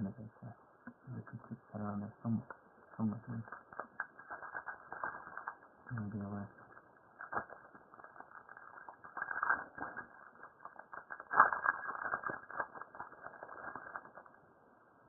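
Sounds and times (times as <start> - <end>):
card wrapper crackling: 3.3 - 14.4.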